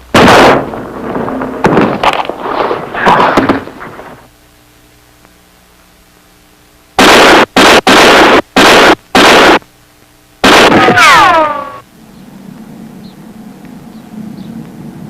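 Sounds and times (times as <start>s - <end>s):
loud burst: 0.0s - 4.2s, 7.0s - 9.7s, 10.4s - 11.8s
gunshots: 0.1s - 4.1s, 7.0s - 9.6s, 10.4s - 11.8s.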